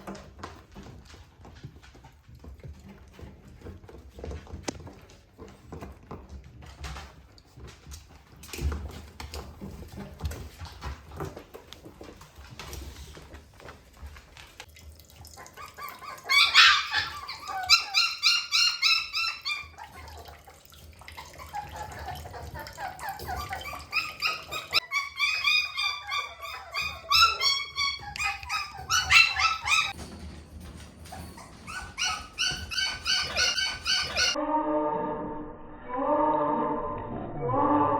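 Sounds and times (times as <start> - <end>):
puppies yipping and whining: 15.2 - 34.4.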